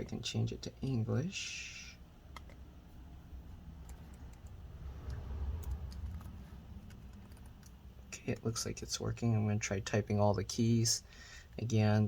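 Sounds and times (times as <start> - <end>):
low rumble: 3.1 - 7.7
laptop keys and touchpad clicking: 3.8 - 7.8.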